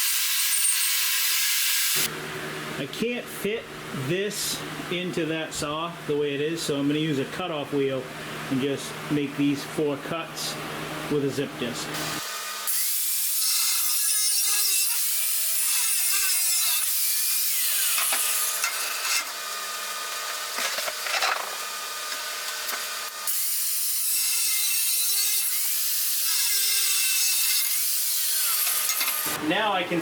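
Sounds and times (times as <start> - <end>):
cutoff wheel grinding steel: 13.2 - 29.4.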